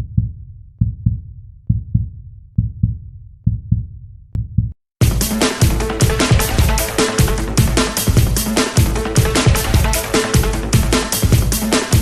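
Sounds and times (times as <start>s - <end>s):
deep heartbeat-like double thumps: 0.0s - 12.0s
electronic track with steady beat: 5.0s - 12.0s.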